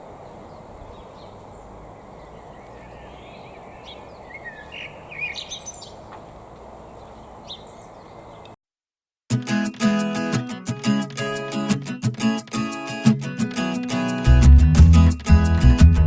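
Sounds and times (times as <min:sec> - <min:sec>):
outdoor background hiss: 0:00.0 - 0:08.6
small birds chirping: 0:00.0 - 0:08.6
strummed acoustic guitar music: 0:09.3 - 0:16.0.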